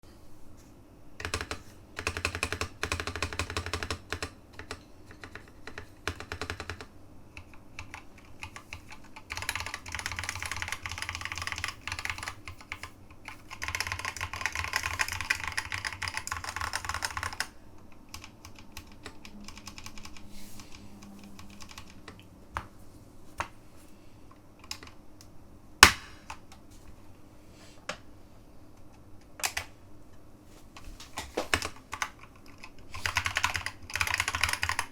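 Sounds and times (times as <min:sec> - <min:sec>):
mechanical keyboard typing: 0:01.2 - 0:22.7, 0:31.3 - 0:34.9.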